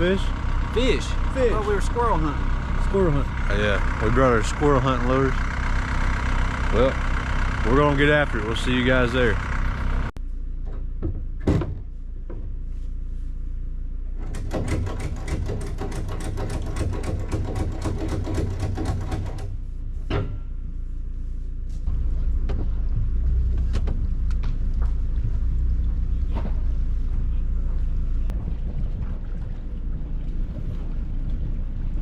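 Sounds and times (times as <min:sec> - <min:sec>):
vehicle engine rumbling: 0:00.0 - 0:32.0
rapid clicks or rattles: 0:14.2 - 0:19.6.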